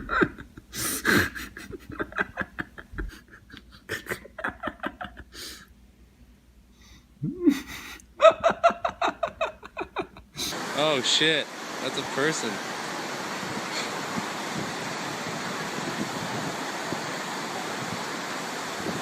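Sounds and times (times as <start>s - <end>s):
person laughing hard: 0.0s - 5.6s, 7.2s - 10.6s
vocal whoop: 7.2s - 7.7s.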